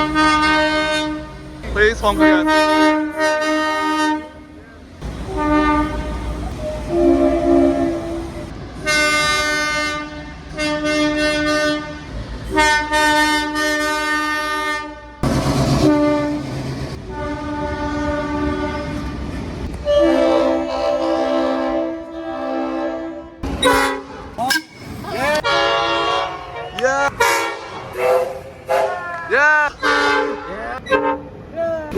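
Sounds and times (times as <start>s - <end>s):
engine rumble: 0.0s - 8.9s, 15.2s - 18.2s
train horn blasts: 0.0s - 31.4s.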